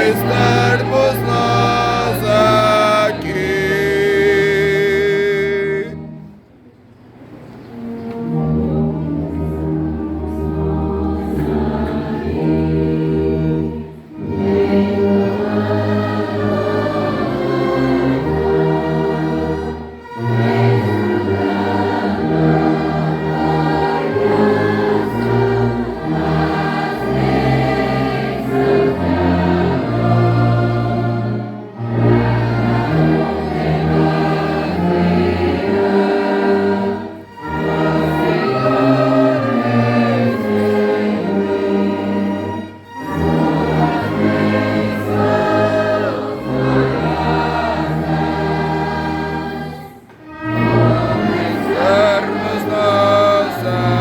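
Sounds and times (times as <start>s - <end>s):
tuba bass line: 0.0s - 6.3s, 50.4s - 54.0s
hymn with voices and instruments: 0.0s - 6.7s, 7.8s - 54.0s.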